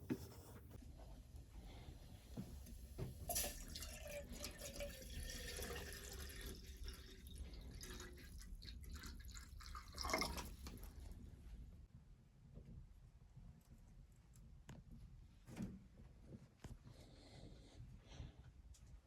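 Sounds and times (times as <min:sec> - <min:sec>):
water dripping and trickling: 0:03.2 - 0:11.1
small clicks and splashes: 0:03.3 - 0:11.1.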